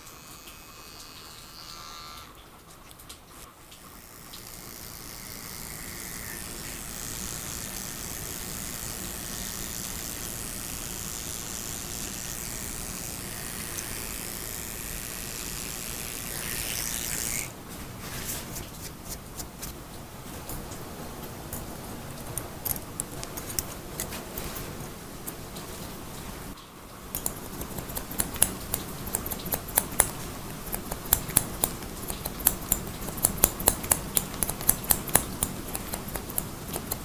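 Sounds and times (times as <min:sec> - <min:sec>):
hair dryer blowing: 0:04.2 - 0:17.5
scissors snipping: 0:04.3 - 0:17.5, 0:20.4 - 0:25.4, 0:27.1 - 0:37.0.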